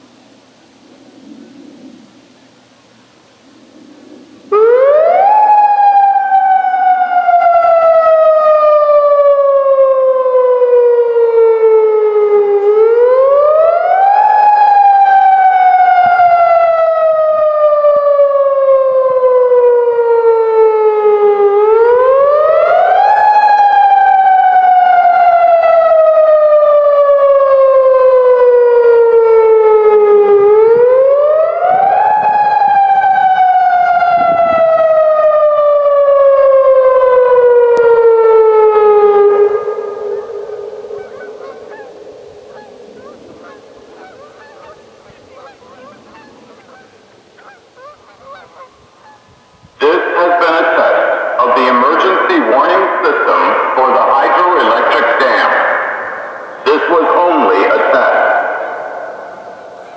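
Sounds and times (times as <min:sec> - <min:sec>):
electronic siren rising and falling: 0:04.5 - 0:46.8.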